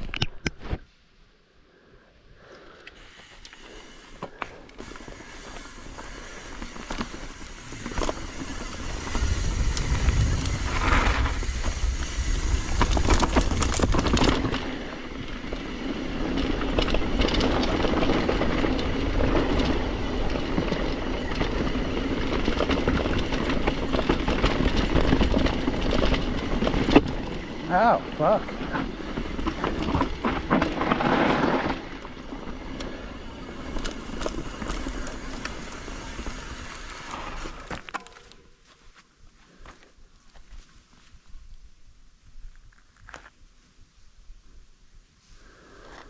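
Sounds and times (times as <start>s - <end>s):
bike rattling: 3.0s - 38.5s
tyres rolling on dirt: 3.9s - 38.4s
wind rushing over microphone: 8.5s - 14.7s.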